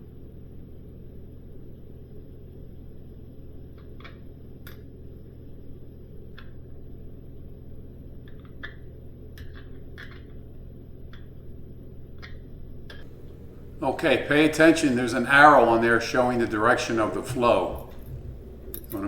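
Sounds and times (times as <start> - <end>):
steady low hum: 13.1 - 19.0.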